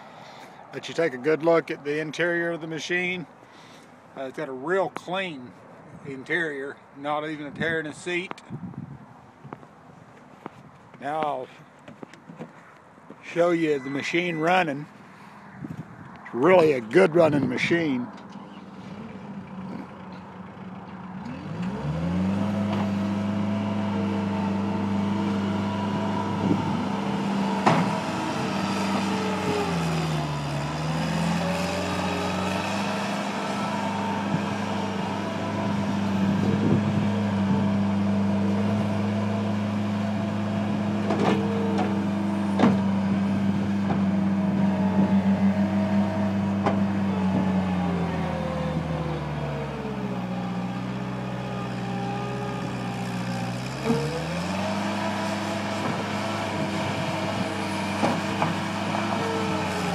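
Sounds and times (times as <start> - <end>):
diesel engine revving: 16.2 - 59.9.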